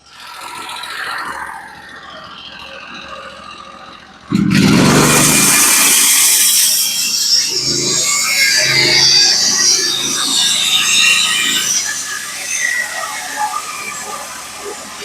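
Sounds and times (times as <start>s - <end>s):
band sawmill cutting log: 3.5s - 15.0s.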